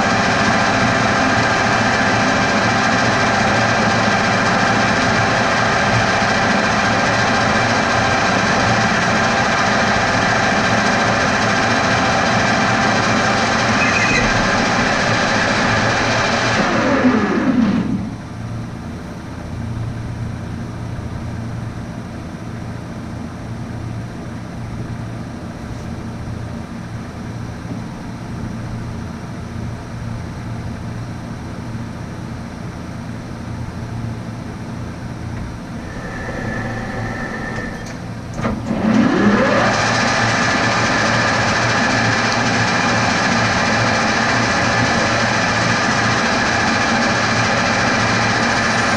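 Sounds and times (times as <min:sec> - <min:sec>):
metal lathe running: 0:00.0 - 0:18.2, 0:35.5 - 0:48.9.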